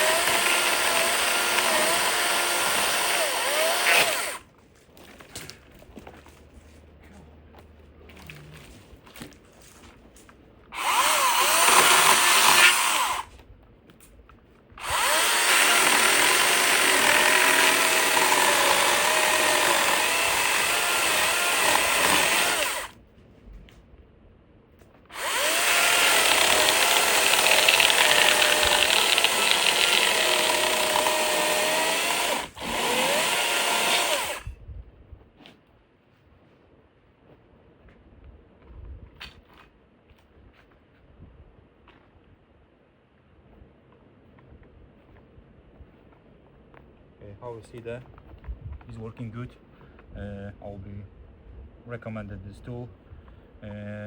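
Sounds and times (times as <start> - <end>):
chainsaw cutting wood: 0.0 - 4.4, 10.8 - 13.3, 14.8 - 23.0, 25.1 - 34.5.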